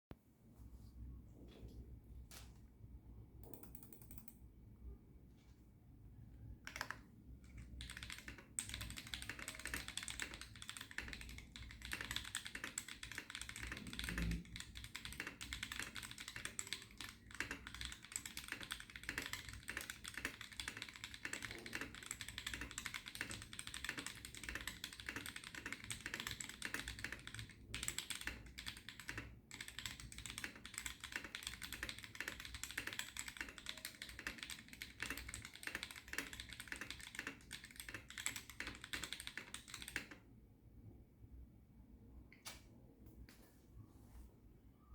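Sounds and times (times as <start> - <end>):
mechanical keyboard typing: 3.4 - 4.4, 6.6 - 40.2.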